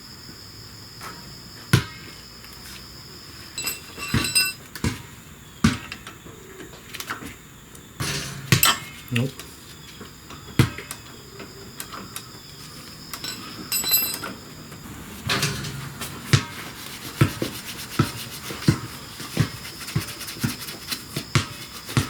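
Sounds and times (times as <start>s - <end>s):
metal tools clinking: 3.5s - 4.6s, 12.8s - 14.4s, 15.2s - 16.7s
metallic ring: 3.5s - 4.6s, 8.0s - 9.1s, 13.1s - 14.4s
rubbing strokes on metal: 15.0s - 22.0s.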